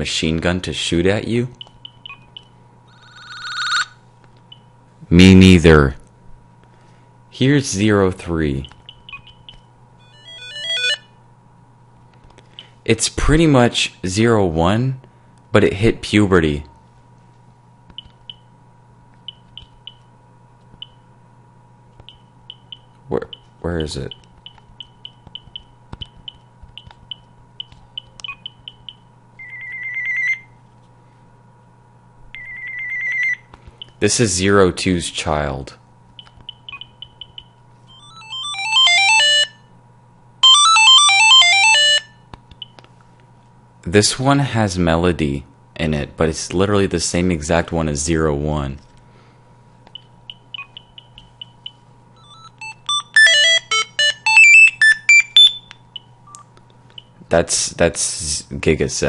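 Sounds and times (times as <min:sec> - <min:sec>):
phone ringtone trill: 0:02.9 - 0:04.0, 0:10.0 - 0:11.1, 0:29.4 - 0:30.5, 0:37.9 - 0:39.6, 0:40.4 - 0:42.2, 0:50.6 - 0:55.7
short high beeps: 0:50.3 - 0:55.7.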